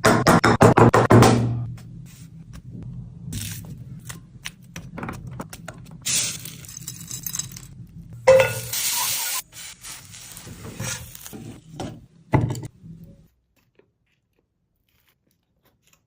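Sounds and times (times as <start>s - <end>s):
metal utensils clinking and scraping: 6.1s - 9.4s
food sizzling: 8.3s - 11.7s.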